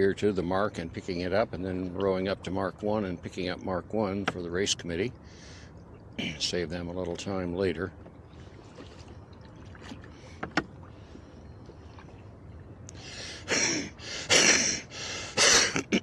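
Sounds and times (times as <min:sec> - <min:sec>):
oars splashing in water: 0:07.0 - 0:13.6.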